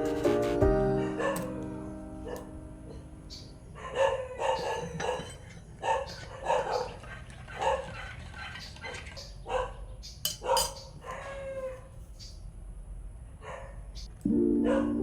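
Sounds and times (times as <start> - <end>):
dog barking: 0.9 - 1.6, 2.2 - 3.0, 3.7 - 11.9, 13.4 - 13.9, 14.6 - 15.0.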